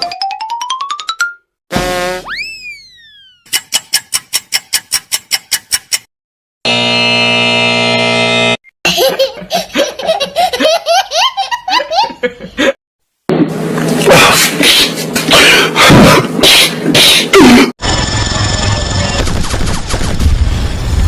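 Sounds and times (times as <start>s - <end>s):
steady buzzer tone: 1.7s - 2.3s, 6.6s - 8.6s
squeaky cartoon laugh: 8.9s - 12.4s.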